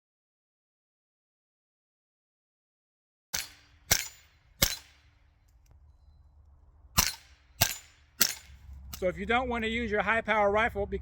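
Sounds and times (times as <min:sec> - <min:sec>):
rifle shots: 0:03.3 - 0:05.2, 0:06.9 - 0:09.1.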